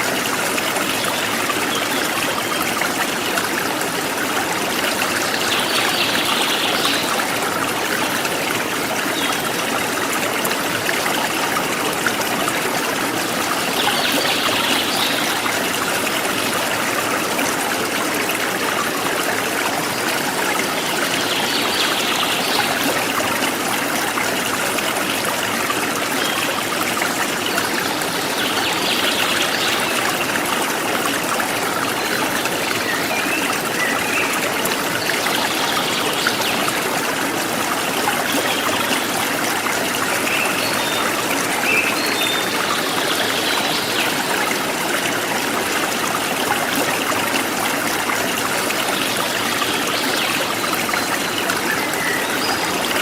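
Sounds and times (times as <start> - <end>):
stream flowing over stones: 0.0 - 53.0.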